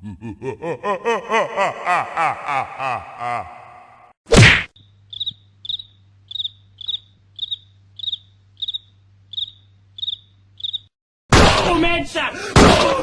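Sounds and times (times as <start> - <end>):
sharp loud click: 4.3 - 4.7
cricket chirping: 4.8 - 10.9.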